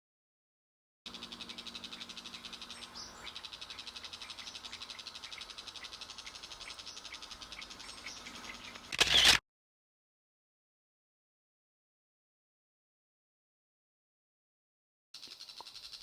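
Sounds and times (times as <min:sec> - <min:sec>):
animal pulsing trill: 0:01.1 - 0:08.8.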